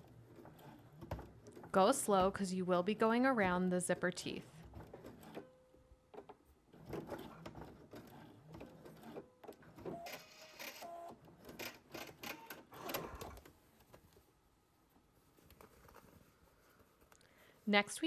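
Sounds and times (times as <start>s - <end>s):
sewing machine stitching: 0.0s - 5.5s, 6.7s - 13.5s.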